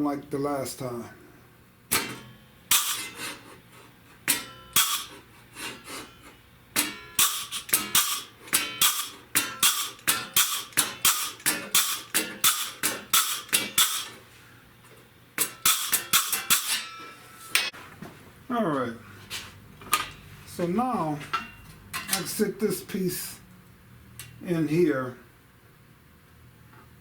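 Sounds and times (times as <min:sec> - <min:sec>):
crimping tool clacking: 0:06.8 - 0:14.2, 0:15.4 - 0:17.7.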